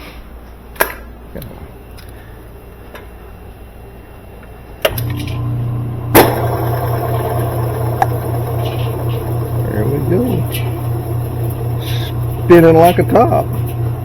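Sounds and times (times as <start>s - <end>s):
motor switch click: 4.8s - 5.5s, 8.0s - 8.2s
washing machine motor humming: 4.9s - 14.0s.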